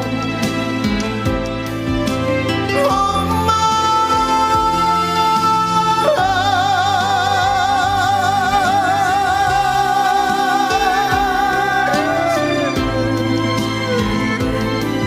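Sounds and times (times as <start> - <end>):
ballad backing track: 0.0 - 15.0
person singing with vibrato: 2.7 - 14.7.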